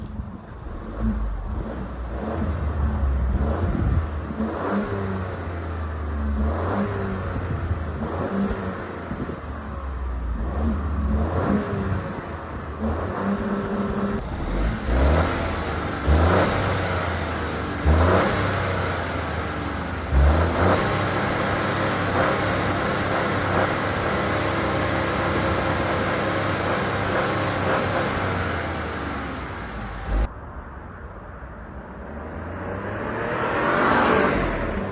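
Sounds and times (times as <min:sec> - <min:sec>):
car engine accelerating: 0:00.0 - 0:34.9.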